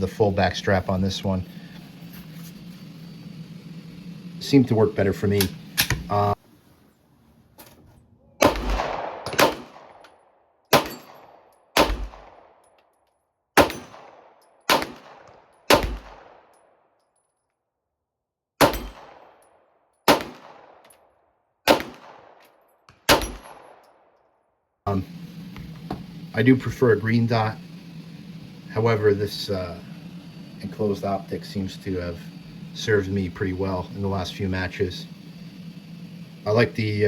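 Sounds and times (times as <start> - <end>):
pistol shots echoing: 8.4 - 10.0, 10.7 - 12.6, 13.6 - 16.5, 18.6 - 19.4, 20.0 - 20.8, 21.6 - 24.1.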